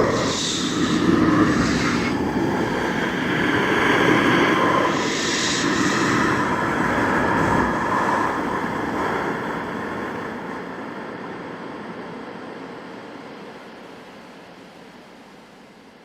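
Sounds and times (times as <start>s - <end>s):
distorted rumbling horror drone: 0.0s - 9.0s.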